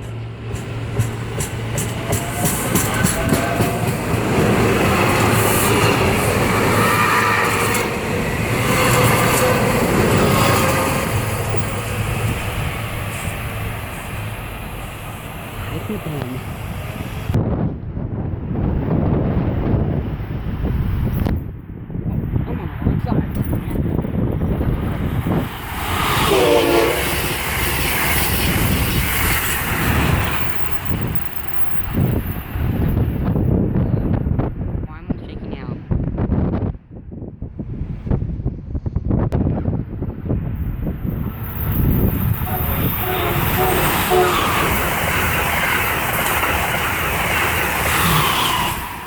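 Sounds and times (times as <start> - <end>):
train rumble and wheel noise: 0.0 - 49.0
train horn blast: 26.0 - 27.4, 42.4 - 45.0.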